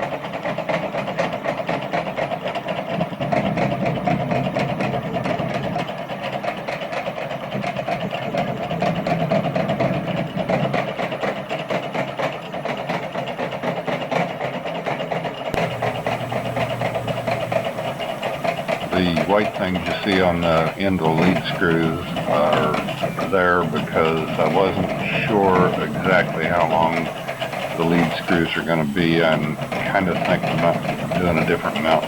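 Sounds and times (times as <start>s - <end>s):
stepper motors whining: 15.6s - 32.0s.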